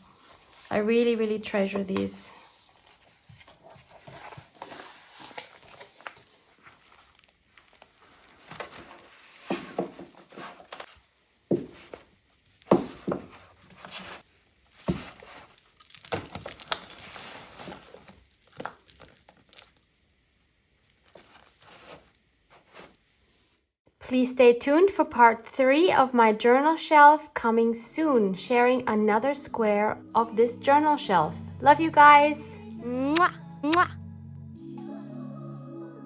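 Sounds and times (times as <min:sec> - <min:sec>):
paper rustling and shuffling: 0:00.0 - 0:18.2, 0:21.0 - 0:23.0.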